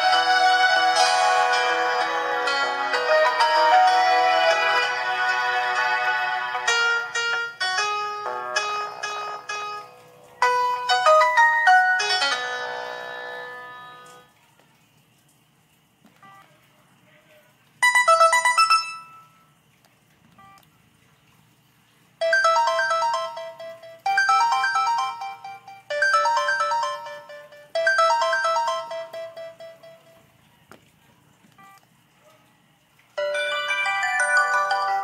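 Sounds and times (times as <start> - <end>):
bright melodic phone ringtone: 0.0 - 6.0, 6.6 - 14.2, 17.8 - 19.5, 22.2 - 30.3, 33.2 - 35.0
dense chiming ringtone: 6.8 - 14.2, 17.8 - 19.5, 22.2 - 30.2, 33.2 - 35.0.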